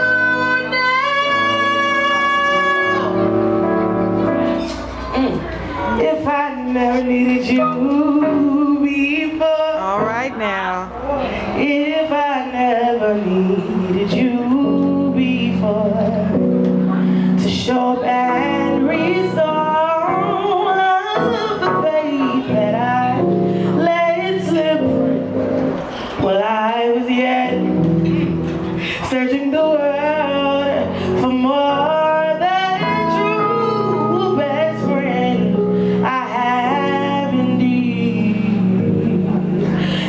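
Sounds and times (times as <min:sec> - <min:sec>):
sustained instrumental chords: 0:00.0 - 0:12.0, 0:29.7 - 0:40.0.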